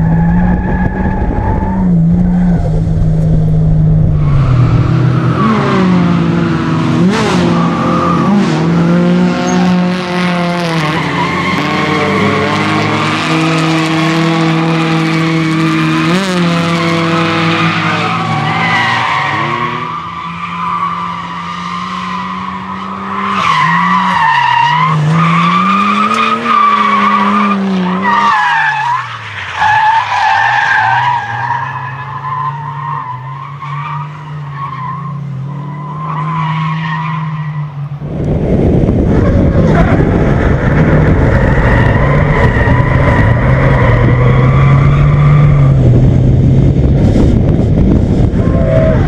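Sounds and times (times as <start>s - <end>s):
car engine revving: 0.0s - 49.0s.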